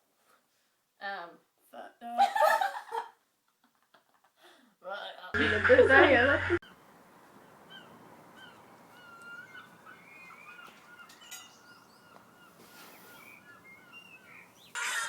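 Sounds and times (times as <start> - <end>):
small birds chirping: 6.6 - 15.0.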